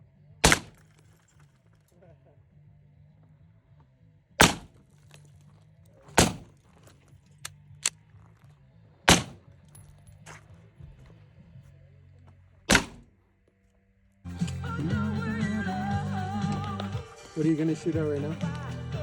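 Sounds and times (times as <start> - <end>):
loud gunshots: 0.4 - 0.8, 4.4 - 4.8, 6.2 - 6.6, 9.1 - 9.4, 12.7 - 13.1
faint sharp cracks: 12.7 - 13.2.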